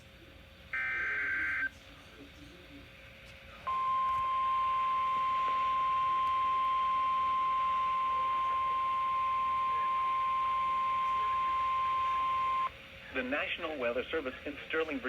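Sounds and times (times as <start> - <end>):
steady high alarm tone: 3.7 - 12.7.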